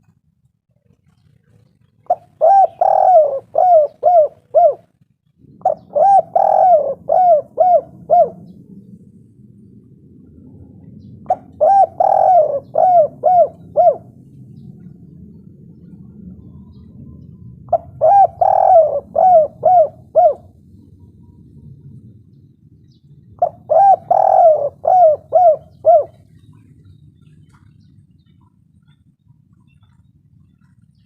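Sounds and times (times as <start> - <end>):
faint low hum: 0.0 - 31.0
dove cooing: 1.1 - 8.7, 10.2 - 22.0, 23.3 - 27.9.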